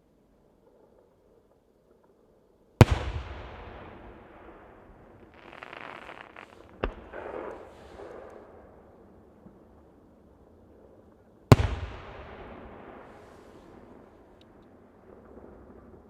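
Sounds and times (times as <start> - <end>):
firework crackling: 2.8 - 8.7, 11.5 - 16.0
firework bang: 11.5 - 13.7.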